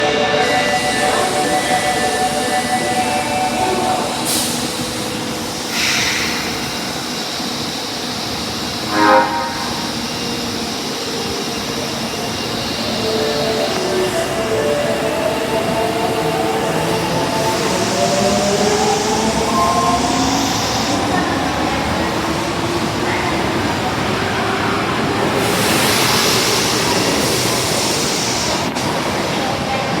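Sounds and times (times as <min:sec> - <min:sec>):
subway train running: 0:00.0 - 0:30.0
air hisses: 0:00.5 - 0:14.2, 0:25.2 - 0:28.8.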